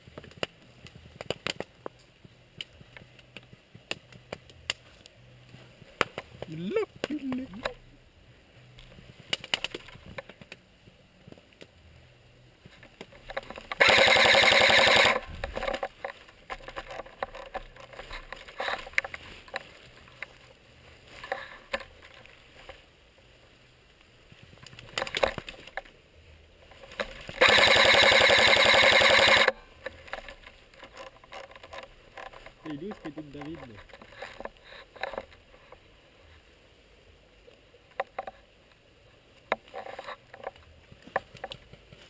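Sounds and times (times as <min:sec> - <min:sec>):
rustling: 0:00.0 - 0:42.0
airsoft gun full-auto bursts: 0:13.8 - 0:15.2, 0:27.4 - 0:29.5.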